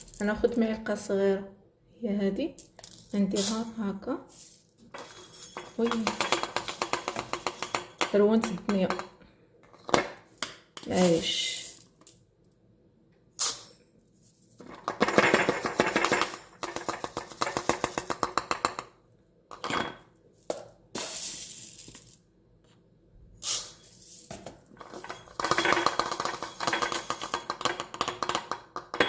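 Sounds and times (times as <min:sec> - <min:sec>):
seeds rattling into jar: 0:04.3 - 0:04.7, 0:21.0 - 0:22.2.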